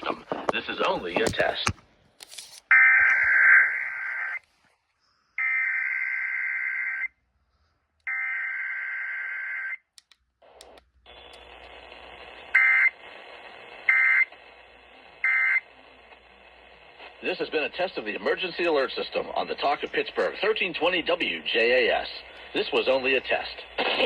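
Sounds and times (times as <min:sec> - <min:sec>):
radio reception hiss: 0:00.0 - 0:01.8, 0:10.4 - 0:24.0.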